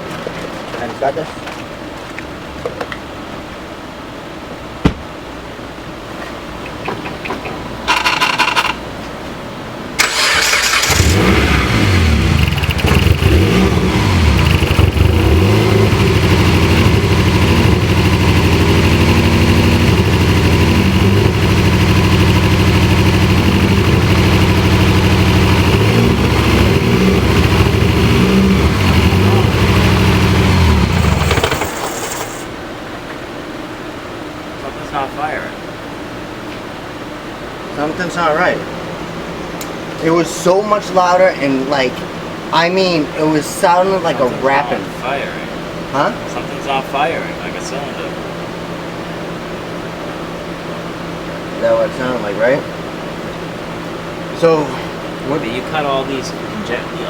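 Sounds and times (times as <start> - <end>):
car engine running: 10.0 - 32.5
starter cranking: 28.9 - 32.5.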